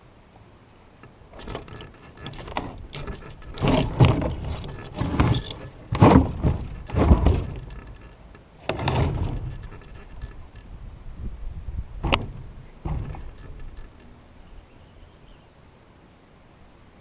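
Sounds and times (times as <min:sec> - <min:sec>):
heavy log thudding and scraping: 0:01.3 - 0:10.8, 0:11.7 - 0:14.0.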